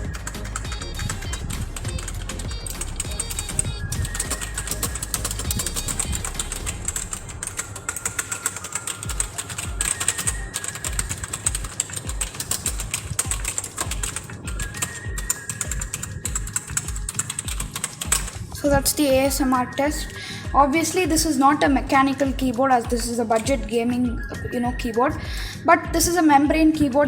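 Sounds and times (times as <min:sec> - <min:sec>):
keyboard typing clicks: 0:00.0 - 0:18.6.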